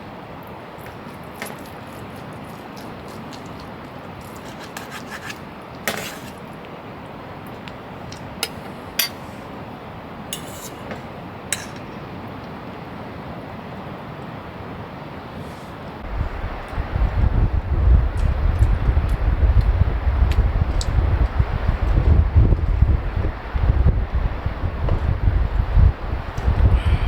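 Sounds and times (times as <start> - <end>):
dishes and utensils clinking: 8.4 - 9.4, 10.4 - 12.1.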